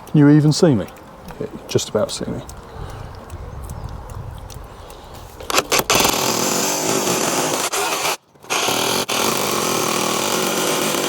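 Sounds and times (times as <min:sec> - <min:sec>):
drill clicks: 0:00.0 - 0:11.0
power drill running: 0:05.5 - 0:11.0.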